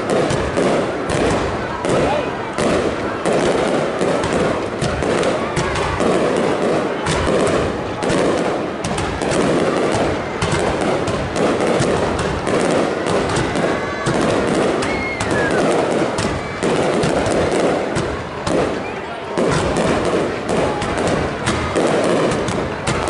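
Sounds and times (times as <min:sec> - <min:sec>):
fireworks bangs and crackling: 0:00.0 - 0:23.0
firework whistling: 0:11.8 - 0:19.1.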